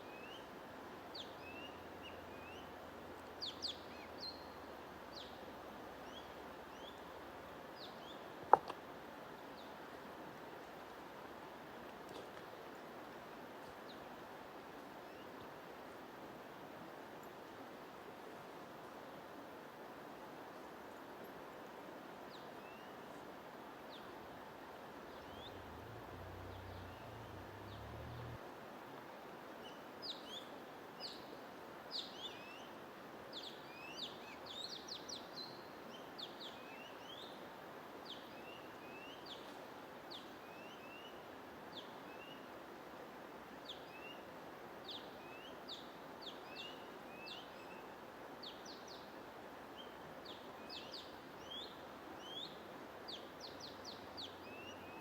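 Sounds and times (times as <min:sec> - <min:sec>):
white-noise hiss: 0:00.0 - 0:55.0
songbirds chirping: 0:00.1 - 0:10.1, 0:23.9 - 0:28.4, 0:33.4 - 0:42.6, 0:43.5 - 0:55.0.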